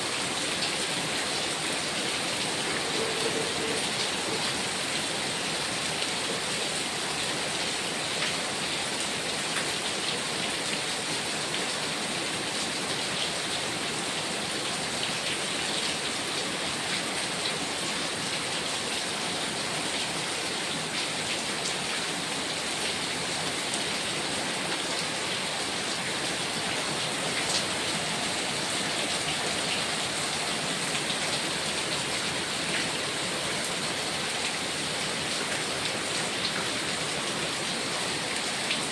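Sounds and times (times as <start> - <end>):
heavy rain hiss: 0.0 - 11.8, 12.4 - 38.9.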